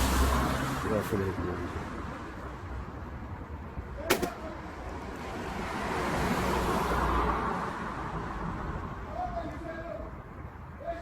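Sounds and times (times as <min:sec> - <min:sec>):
vehicle passing by: 0:00.0 - 0:02.1, 0:05.0 - 0:08.9.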